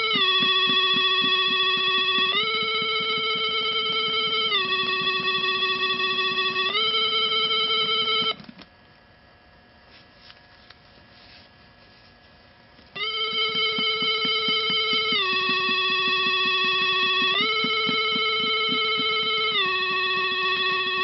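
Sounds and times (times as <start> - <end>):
buzzy two-note electronic tone: 0.0 - 8.4, 13.0 - 21.0
fast low vibration pulsing: 0.0 - 8.4, 13.0 - 21.0.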